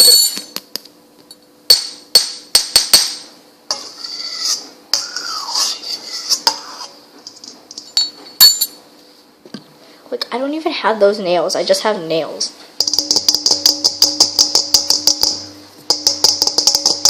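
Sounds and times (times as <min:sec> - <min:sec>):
scraping and rubbing with squeak: 0:03.8 - 0:07.0.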